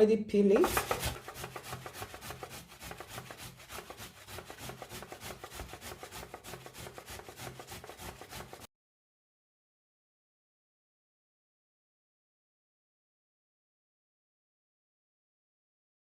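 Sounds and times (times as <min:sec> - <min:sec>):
ginger being grated: 0:00.5 - 0:08.7.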